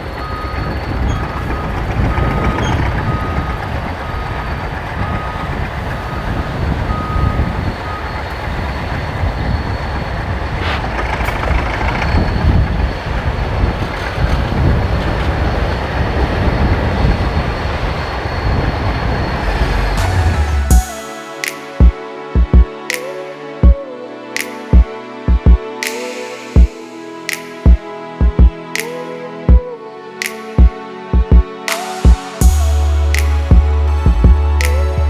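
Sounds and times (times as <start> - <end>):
reversing alarm beeping: 0.0 - 14.3
heavy vehicle engine rumbling: 0.0 - 20.8, 32.4 - 35.0.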